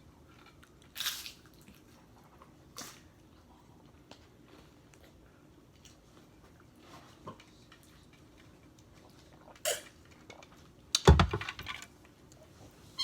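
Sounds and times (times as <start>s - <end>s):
clatter of sharp knocks: 11.0s - 11.8s.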